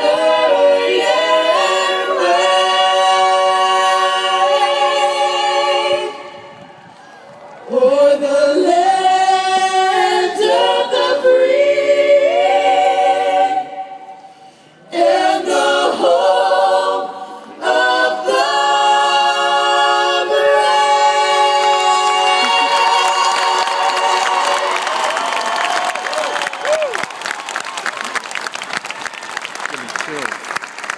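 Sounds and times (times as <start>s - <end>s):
a cappella group singing: 0.0s - 6.8s, 7.6s - 25.1s.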